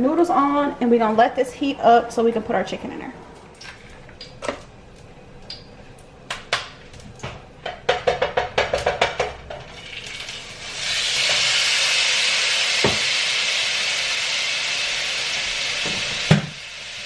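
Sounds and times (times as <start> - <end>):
kitchen utensils clicking and tapping: 6.3 - 9.8
chicken sizzling in hot oil: 7.8 - 17.0.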